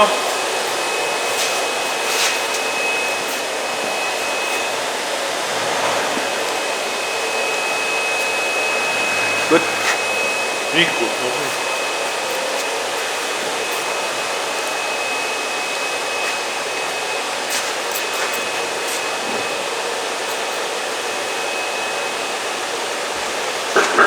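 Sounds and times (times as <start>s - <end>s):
faint high whine: 0.0s - 17.2s
air blower rushing: 0.0s - 19.9s.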